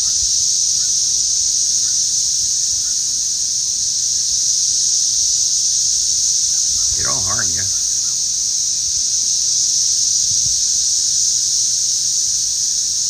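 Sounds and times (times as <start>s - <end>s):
cicadas buzzing: 0.0s - 13.0s.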